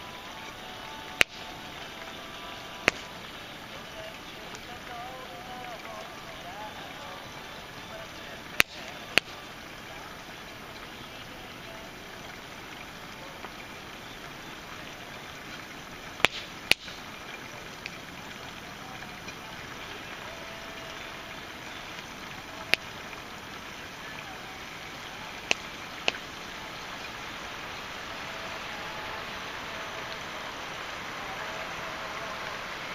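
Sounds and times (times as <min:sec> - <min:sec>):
campfire hissing: 0:00.0 - 0:32.9
wood crackling pops: 0:01.1 - 0:01.9, 0:02.8 - 0:03.4, 0:08.5 - 0:09.6, 0:16.2 - 0:17.1, 0:25.4 - 0:26.6.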